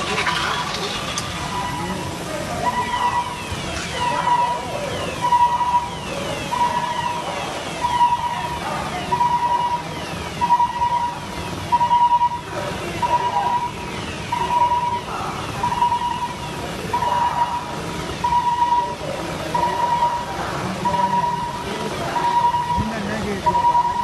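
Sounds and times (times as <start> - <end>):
emergency siren: 0.0 - 24.0
street noise: 0.0 - 24.0
on-off beeps: 18.2 - 24.0.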